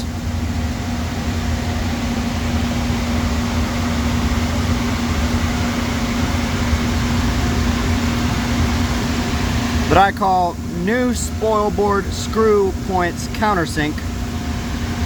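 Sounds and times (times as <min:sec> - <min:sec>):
electric machine motor humming: 0:00.0 - 0:15.0.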